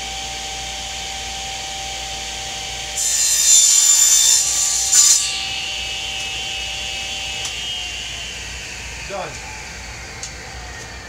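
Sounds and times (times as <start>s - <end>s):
table saw whine: 0.0s - 11.0s
saw blade cutting wood: 3.0s - 9.6s.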